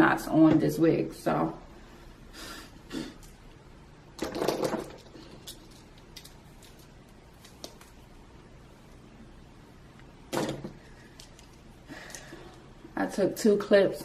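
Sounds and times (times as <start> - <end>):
wig rustling: 5.0 - 9.1.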